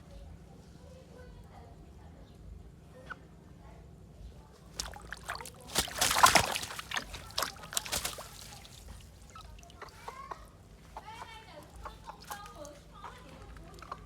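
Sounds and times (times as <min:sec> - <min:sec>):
water splashing: 0:04.7 - 0:10.0.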